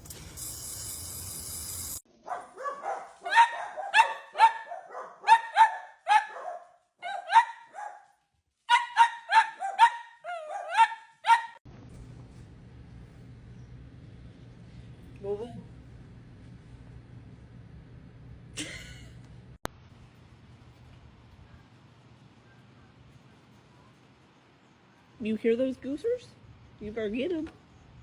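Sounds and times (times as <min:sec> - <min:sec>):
small dog yapping: 0:02.3 - 0:08.0, 0:08.7 - 0:11.6.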